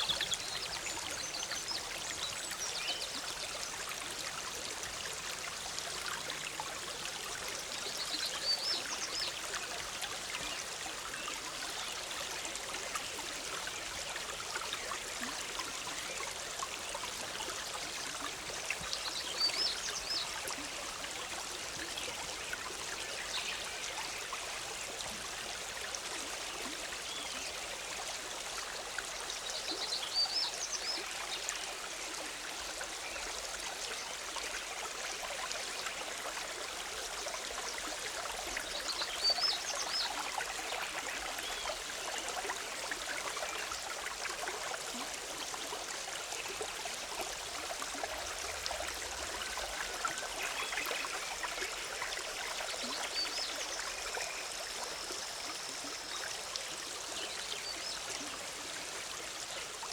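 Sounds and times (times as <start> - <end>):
river bubbling over rocks: 31.7 - 59.9.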